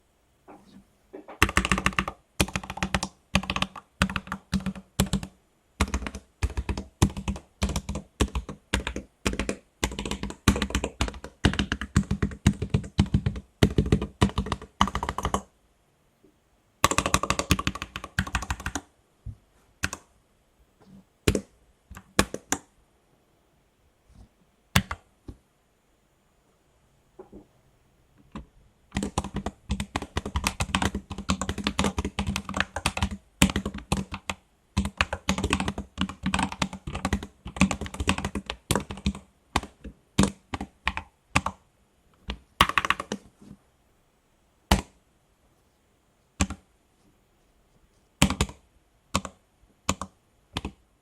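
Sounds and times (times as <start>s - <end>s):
mechanical keyboard typing: 1.4s - 15.5s, 16.8s - 18.9s, 28.3s - 41.6s, 42.2s - 43.2s, 48.2s - 50.8s.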